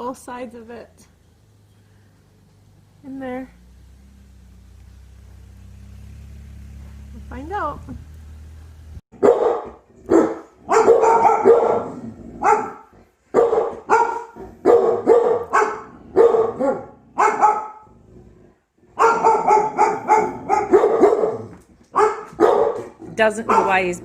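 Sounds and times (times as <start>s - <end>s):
dog barking: 9.2s - 17.9s, 19.0s - 24.0s.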